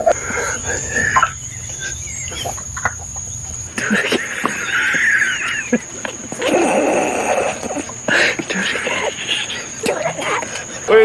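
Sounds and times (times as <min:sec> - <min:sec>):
person's high-pitched wheezing laugh: 0:03.8 - 0:11.0.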